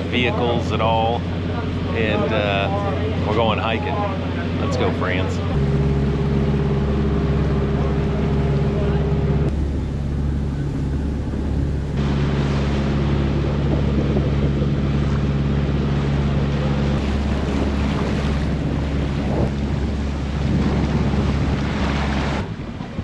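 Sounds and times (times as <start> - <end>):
boat engine running: 0.0 - 23.0
rushing water: 0.0 - 23.0
wind buffeting microphone: 0.0 - 23.0.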